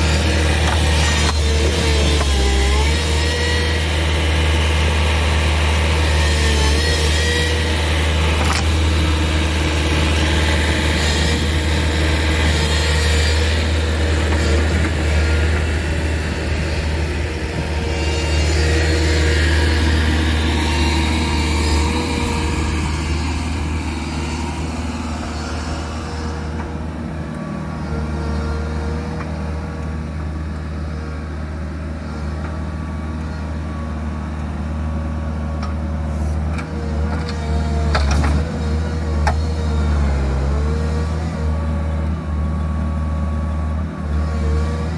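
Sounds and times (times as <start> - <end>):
diesel engine humming: 0.0 - 44.9.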